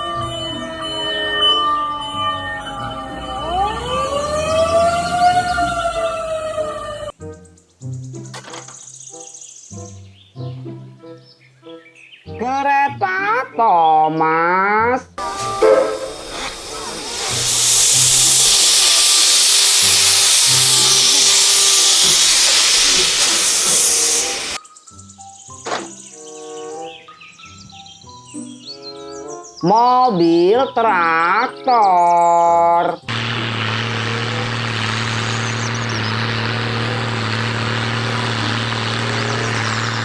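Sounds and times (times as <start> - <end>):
light background music: 7.1 - 16.2, 24.6 - 33.1
steam locomotive hiss: 15.2 - 24.6, 33.1 - 40.0
tractor engine idling: 15.2 - 24.6, 33.1 - 40.0.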